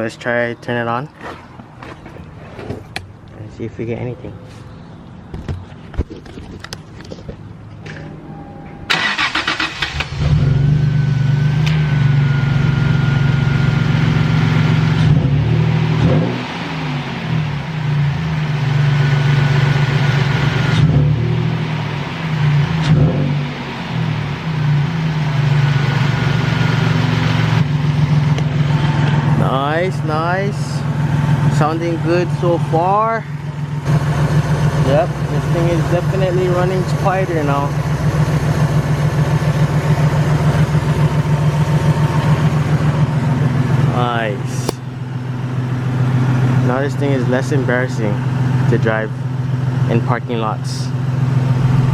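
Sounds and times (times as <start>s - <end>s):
truck engine running: 4.4s - 16.0s, 23.4s - 51.9s.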